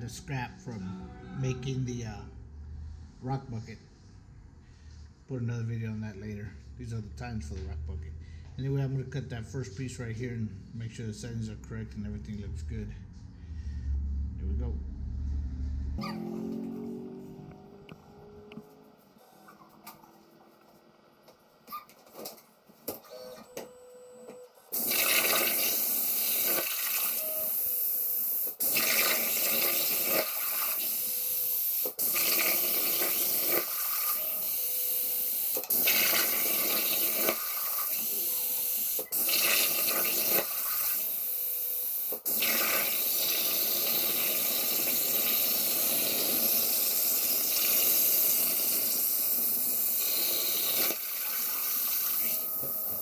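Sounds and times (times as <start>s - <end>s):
plasma torch hissing: 24.7s - 53.0s.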